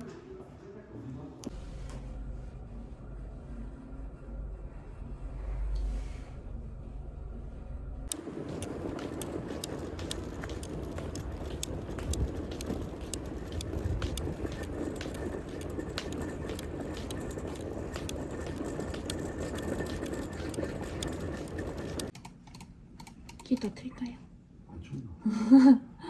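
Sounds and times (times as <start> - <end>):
car road and engine noise: 7.3 - 22.1
light clicks and ticks: 8.1 - 23.7.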